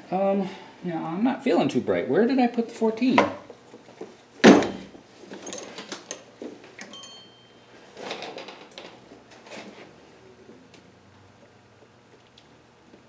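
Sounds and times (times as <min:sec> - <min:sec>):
metal tools clinking and rattling: 0:05.4 - 0:06.2.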